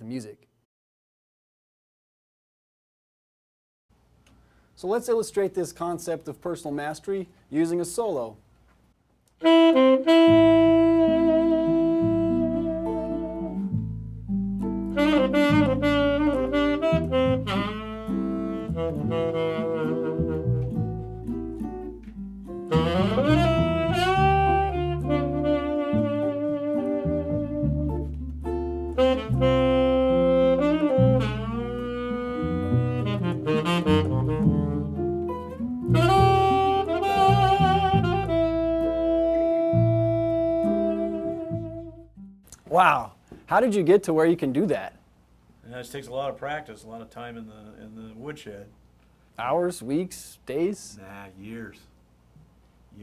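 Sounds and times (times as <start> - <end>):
jazz saxophone solo: 9.4 - 42.2
held bass notes: 9.4 - 43.9.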